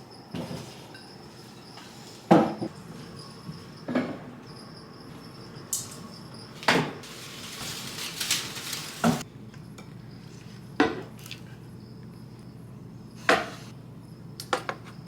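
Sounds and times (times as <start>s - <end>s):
scraping or rustling: 7.0s - 9.2s.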